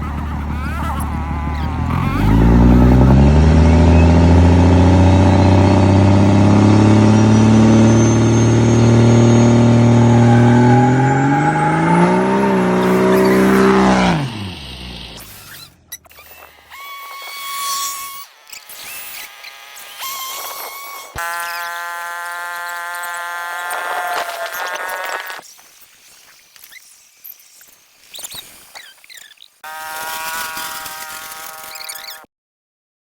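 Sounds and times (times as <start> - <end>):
car engine revving: 0.0 - 16.0.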